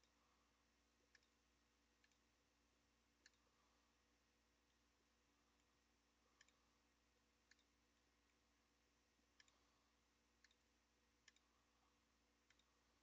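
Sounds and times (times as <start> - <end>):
low steady hum: 0.0 - 13.0
computer mouse clicks: 1.1 - 1.4, 2.0 - 2.3, 3.2 - 3.6, 5.5 - 6.7, 7.4 - 8.4, 9.3 - 9.7, 10.4 - 11.6, 12.4 - 12.8.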